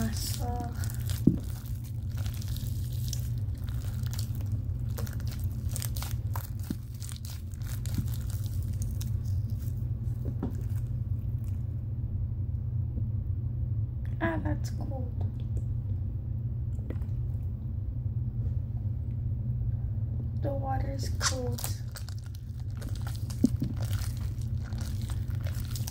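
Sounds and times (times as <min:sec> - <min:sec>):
slime sticky crackles and pops: 0:00.0 - 0:11.5, 0:21.2 - 0:25.9
steady low hum: 0:00.0 - 0:25.9.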